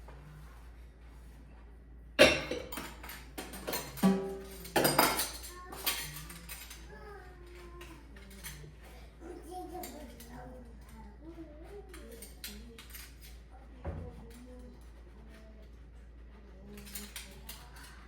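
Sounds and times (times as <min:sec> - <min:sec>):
dishes and utensils clattering: 0:02.2 - 0:11.1, 0:11.7 - 0:15.5, 0:16.6 - 0:18.0.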